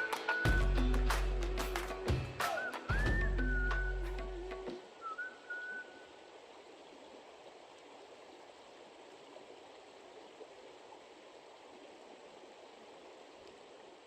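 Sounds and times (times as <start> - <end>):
short whistle-like call: 2.4 - 4.3, 5.0 - 6.1.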